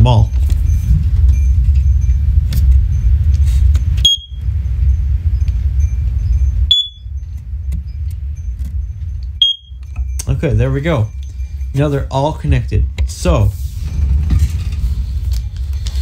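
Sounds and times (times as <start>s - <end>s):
steady low rumble: 0.0s - 16.0s
smoke alarm chirps: 0.3s - 12.8s.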